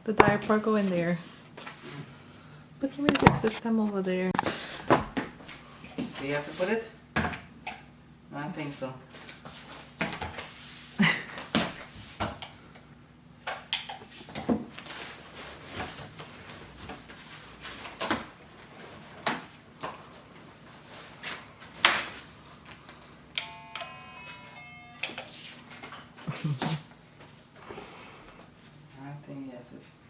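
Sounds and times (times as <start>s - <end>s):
electronic musical tones: 23.3s - 25.6s.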